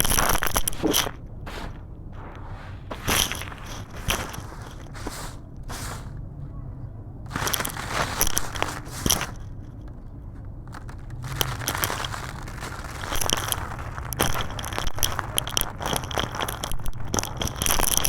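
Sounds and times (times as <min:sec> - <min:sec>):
concrete crunching and crackling: 0:00.0 - 0:06.4, 0:07.3 - 0:18.0.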